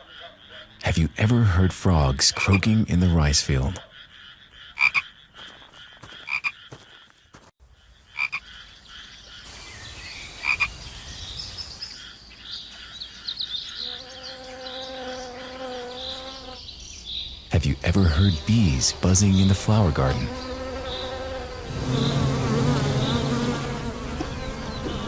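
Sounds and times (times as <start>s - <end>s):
frogs croaking: 0.0s - 25.0s
insect buzz: 8.1s - 25.0s
bee humming: 13.7s - 16.6s, 17.6s - 25.0s.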